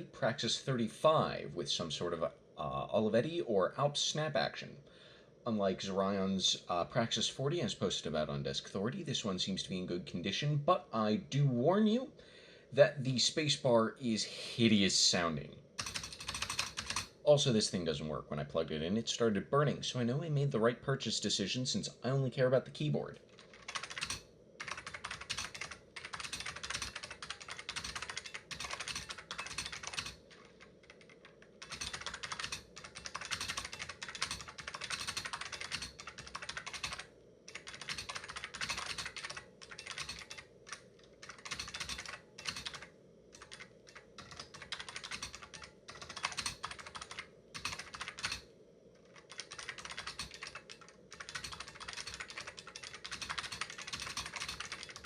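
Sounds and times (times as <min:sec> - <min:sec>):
typewriter key clicks: 0:31.6 - 0:40.4, 0:49.2 - 0:55.0.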